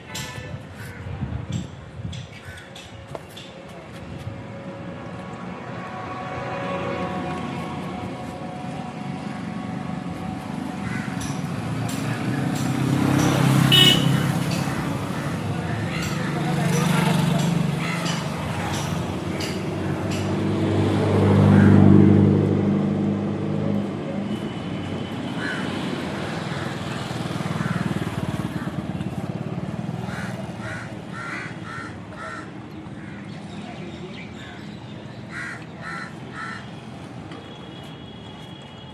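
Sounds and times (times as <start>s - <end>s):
crows cawing: 2.4s - 2.8s, 10.8s - 11.4s, 13.7s - 16.8s, 17.7s - 20.3s, 21.4s - 22.0s, 25.4s - 28.9s, 30.0s - 33.3s, 35.3s - 36.7s
vehicle engine passing: 11.5s - 23.9s.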